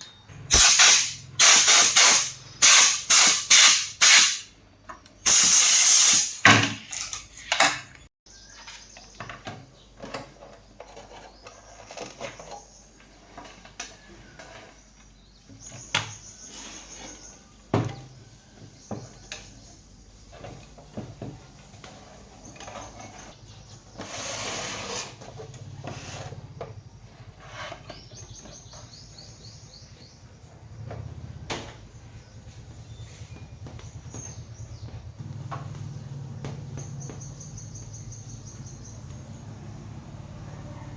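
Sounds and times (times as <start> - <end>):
loud hiss: 0.5 - 4.5, 5.3 - 6.4.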